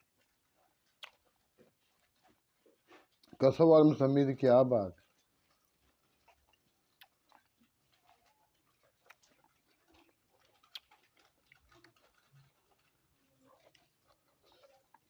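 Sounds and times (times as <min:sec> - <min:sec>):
mouth clicks and chewing: 0:00.0 - 0:15.0.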